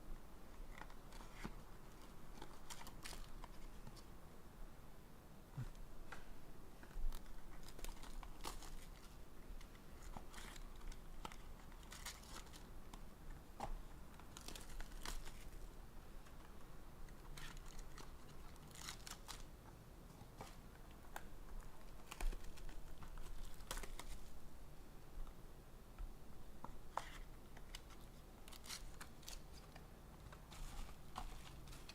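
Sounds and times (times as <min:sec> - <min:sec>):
foil wrappers crinkling and tearing: 0:07.1 - 0:09.2, 0:10.0 - 0:12.7, 0:14.3 - 0:15.6, 0:17.4 - 0:19.5, 0:21.9 - 0:24.3, 0:27.7 - 0:29.6.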